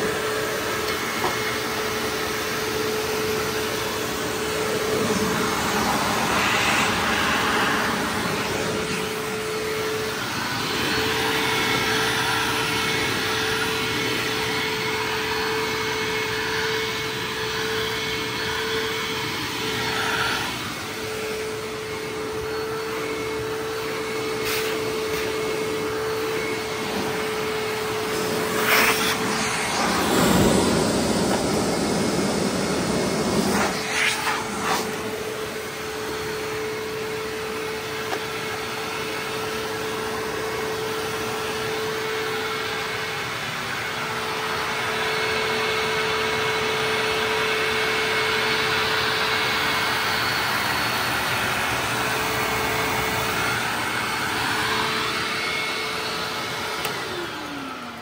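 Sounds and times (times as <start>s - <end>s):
vacuum cleaner motor whine: 0.0s - 58.0s
rushing air: 3.8s - 14.3s, 19.3s - 36.1s.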